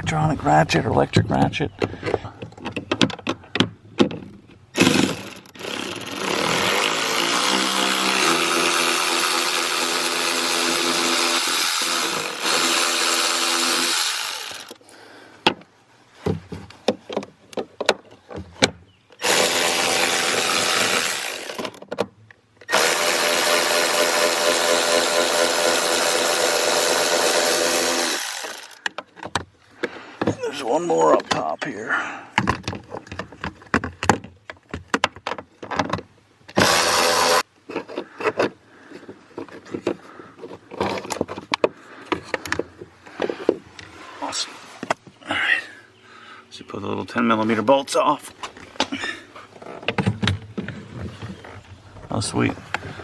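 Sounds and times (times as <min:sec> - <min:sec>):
electric ratchet motor whine: 0:04.8 - 0:14.8, 0:36.6 - 0:37.4.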